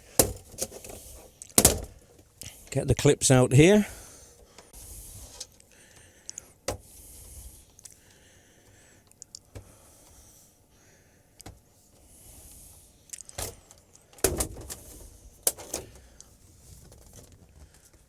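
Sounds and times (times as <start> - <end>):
panel cracking and rattling: 0.1 - 2.2, 13.2 - 18.0.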